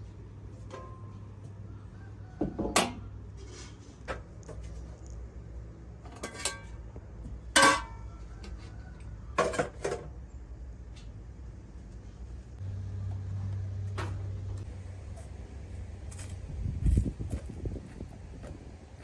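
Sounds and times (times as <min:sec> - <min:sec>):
dishes and utensils clinking: 0:06.1 - 0:06.8, 0:07.5 - 0:08.1
steady low hum: 0:10.2 - 0:19.0.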